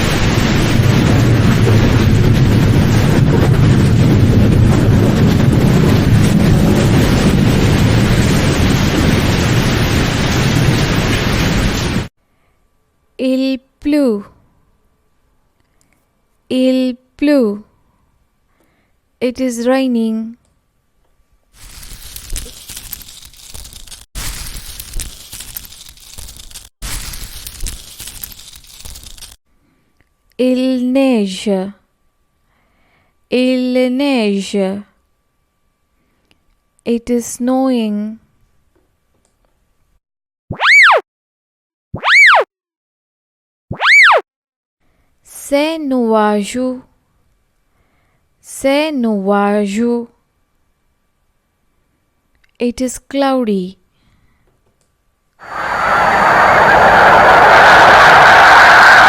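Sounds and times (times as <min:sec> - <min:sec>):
crackling patter of rain: 0:00.0 - 0:12.1, 0:21.6 - 0:29.4.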